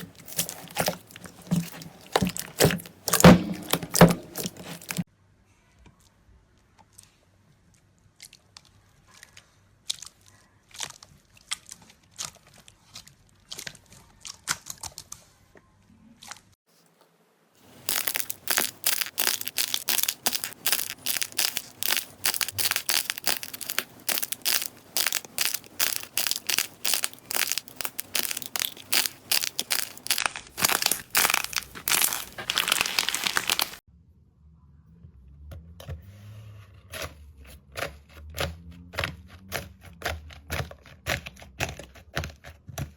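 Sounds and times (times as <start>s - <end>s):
slime crackling and popping: 0.0s - 5.0s, 17.6s - 33.8s.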